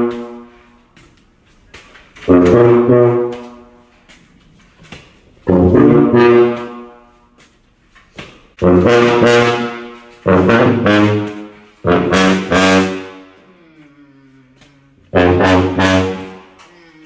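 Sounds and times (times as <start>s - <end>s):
brass section playing chords: 0.0s - 0.6s, 2.2s - 3.8s, 5.4s - 7.2s, 8.6s - 13.4s, 15.1s - 16.5s.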